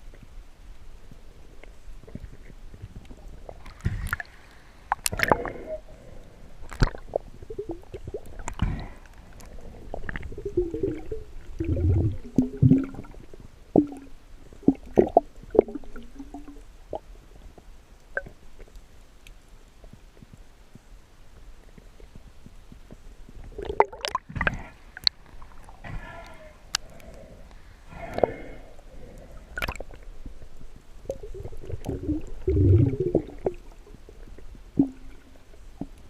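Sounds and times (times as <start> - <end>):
water gurgling and bubbling: 5.0 - 5.8, 6.7 - 16.6, 23.5 - 27.3, 31.0 - 35.4.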